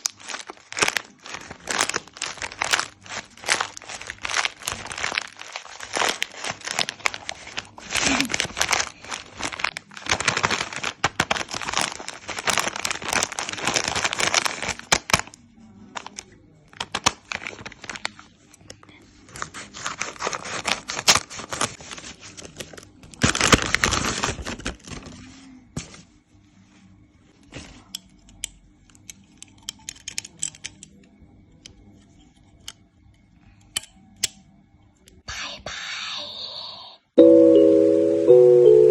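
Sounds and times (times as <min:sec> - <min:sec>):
wrappers tearing and crinkling: 0:00.0 - 0:18.4, 0:19.2 - 0:25.6.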